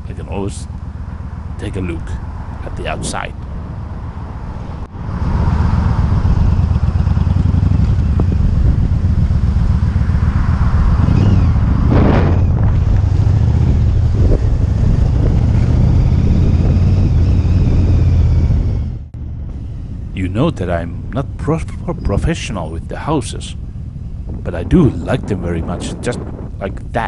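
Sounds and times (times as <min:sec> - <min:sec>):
motorcycle engine running: 0:00.0 - 0:27.0
wind on microphone: 0:01.4 - 0:27.0.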